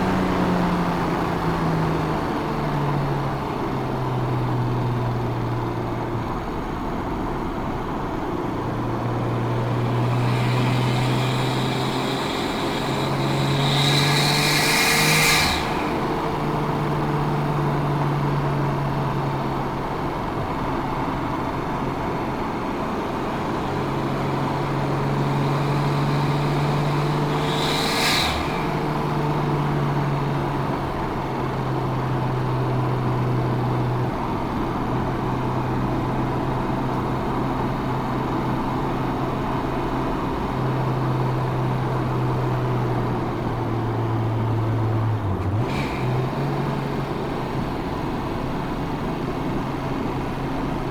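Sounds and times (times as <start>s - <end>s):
car engine accelerating through gears: 0.0s - 50.9s
turbo air hiss: 9.3s - 18.2s, 23.2s - 30.8s.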